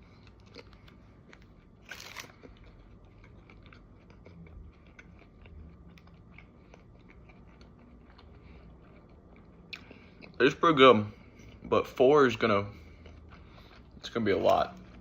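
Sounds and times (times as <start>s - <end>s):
person chewing with mouth clicks: 0.0s - 10.4s, 12.7s - 15.0s
crunch of biting sandwich: 0.2s - 8.3s.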